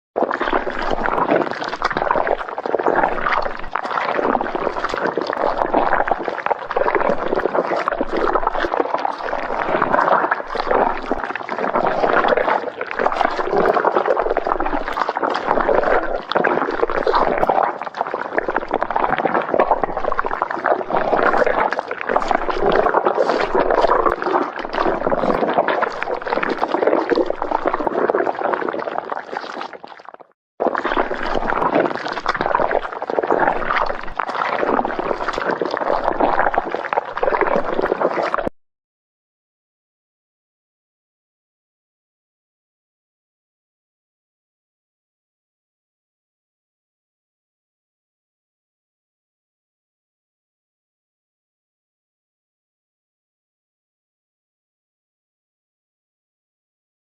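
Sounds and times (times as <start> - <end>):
stomach growling: 0.2 - 38.5.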